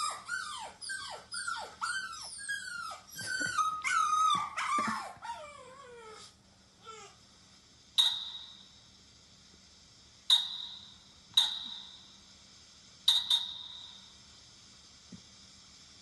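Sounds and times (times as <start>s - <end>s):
high ringing pings: 13.1s - 14.1s.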